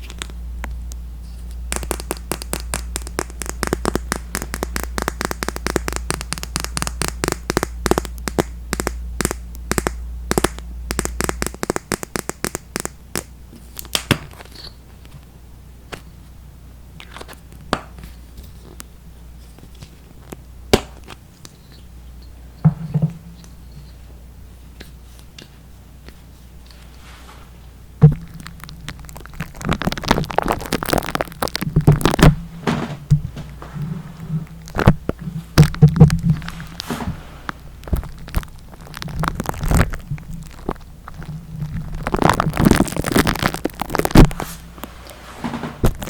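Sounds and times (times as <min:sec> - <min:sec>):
close crackling and scratching clicks: 0:00.0 - 0:15.3, 0:28.1 - 0:32.4, 0:34.4 - 0:45.2.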